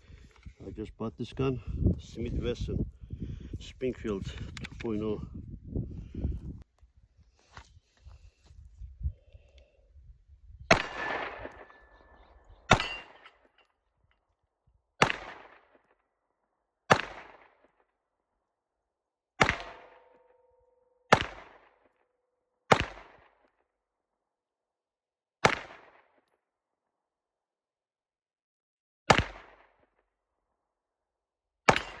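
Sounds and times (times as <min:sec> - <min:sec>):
pistol shots with echo: 0:10.7 - 0:13.3, 0:15.0 - 0:15.7, 0:16.9 - 0:17.6, 0:19.4 - 0:20.2, 0:21.1 - 0:21.8, 0:22.7 - 0:23.3, 0:25.4 - 0:26.0, 0:29.1 - 0:29.6, 0:31.7 - 0:32.0.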